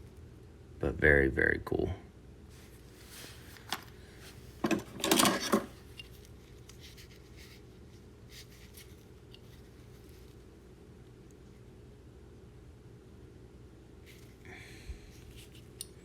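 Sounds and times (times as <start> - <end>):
metal hand tools clattering: 4.6 - 5.7.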